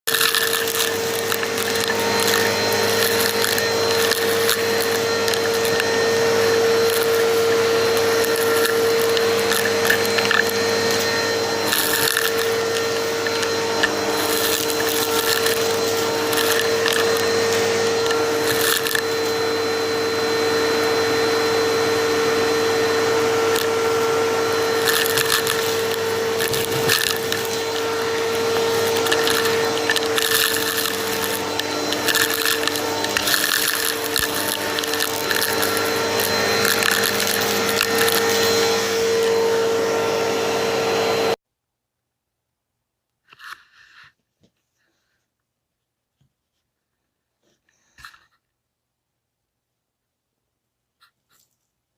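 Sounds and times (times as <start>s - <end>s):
vacuum cleaner whine: 0.0s - 41.4s.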